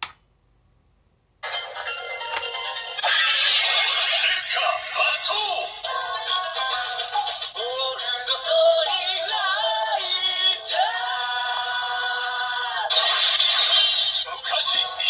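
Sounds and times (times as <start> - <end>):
synthesized sung chant with music: 3.6 - 15.0.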